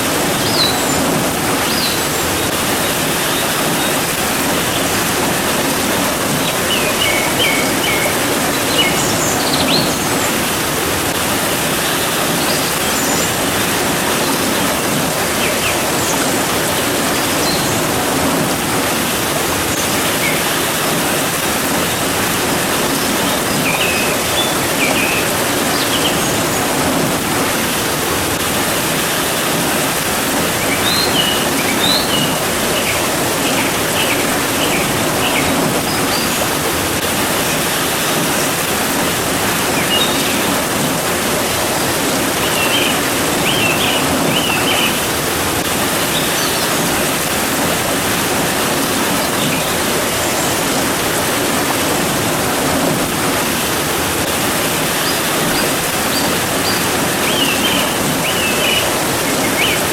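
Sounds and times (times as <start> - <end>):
rain hissing: 0.0 - 59.9
small birds chirping: 0.4 - 5.4, 6.2 - 10.6, 23.0 - 26.7, 30.5 - 36.6, 39.6 - 40.8, 42.2 - 45.1, 54.8 - 59.9.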